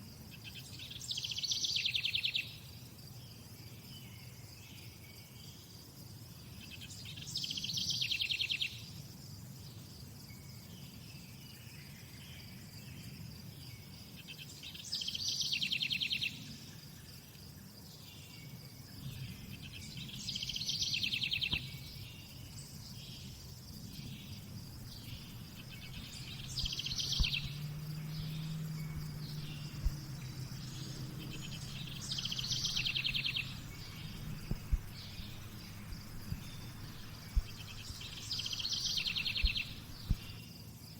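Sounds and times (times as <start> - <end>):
songbird singing: 0.4 - 2.6, 6.6 - 8.9, 10.3 - 16.6, 17.9 - 40.8
high insect trill: 11.5 - 40.9
low background rumble: 23.6 - 40.4.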